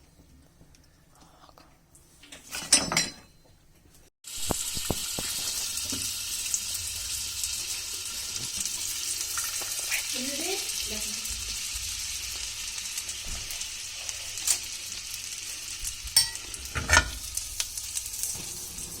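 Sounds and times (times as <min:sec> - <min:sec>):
butter sizzling on a griddle: 0:04.2 - 0:19.0.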